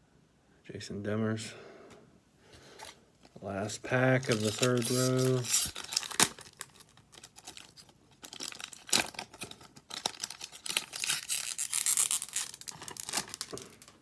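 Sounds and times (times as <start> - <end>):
plastic wrapper tearing and crinkling: 3.6 - 14.0.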